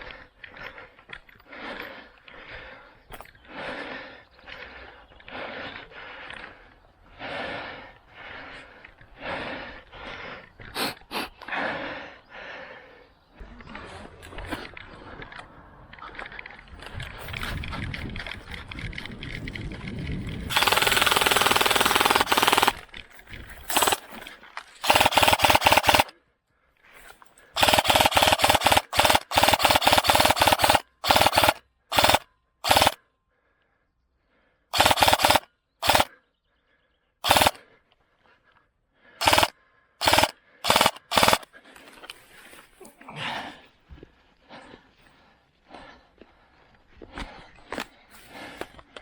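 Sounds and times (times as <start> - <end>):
airsoft gun firing bursts: 20.5 - 22.9, 23.7 - 24.2, 24.8 - 26.1, 27.6 - 33.0, 34.7 - 36.1, 37.2 - 37.6, 39.2 - 41.5.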